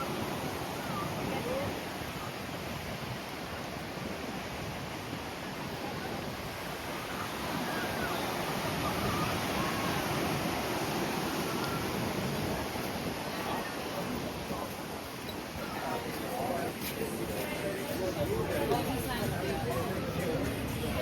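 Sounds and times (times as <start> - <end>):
faint distant voices: 5.3 - 21.0.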